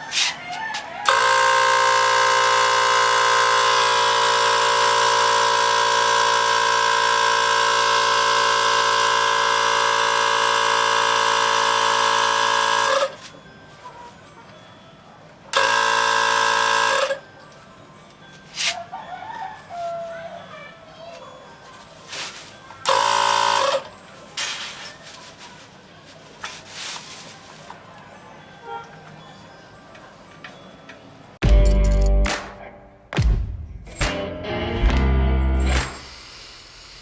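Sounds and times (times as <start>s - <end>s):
air compressor running: 1.0s - 13.4s, 15.5s - 17.3s, 22.8s - 24.0s, 35.6s - 37.0s.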